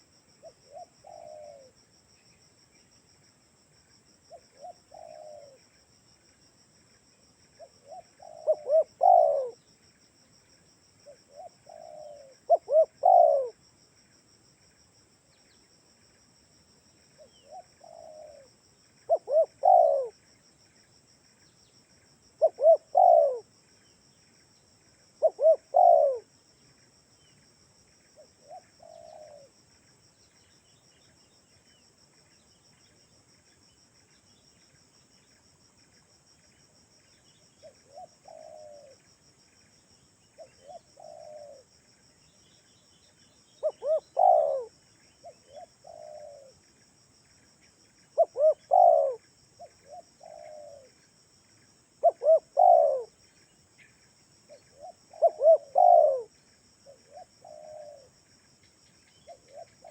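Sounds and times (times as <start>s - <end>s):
dove cooing: 0.4s - 1.7s, 4.3s - 5.6s, 7.6s - 9.6s, 11.0s - 13.6s, 17.2s - 18.5s, 19.1s - 20.2s, 22.4s - 23.5s, 25.2s - 26.3s, 28.2s - 29.6s, 37.6s - 39.0s, 40.4s - 41.7s, 43.6s - 46.6s, 48.2s - 50.9s, 52.0s - 53.2s, 54.5s - 58.1s, 59.2s - 59.9s.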